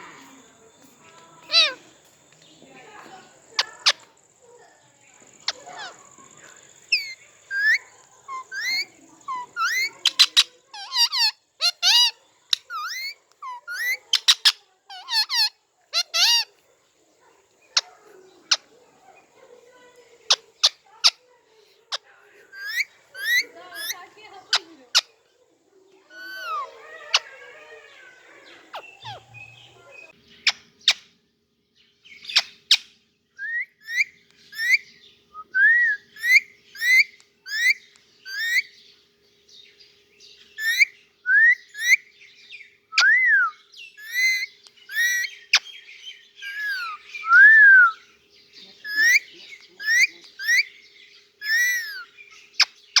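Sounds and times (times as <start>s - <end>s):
parakeet chirping: 1.5s - 1.8s, 2.8s - 4.1s, 5.3s - 16.5s, 19.8s - 21.2s, 22.5s - 25.2s, 26.1s - 27.5s, 28.6s - 31.1s, 32.1s - 32.9s, 33.5s - 35.0s, 35.7s - 38.8s, 40.4s - 42.1s, 43.0s - 48.1s, 48.8s - 53.0s.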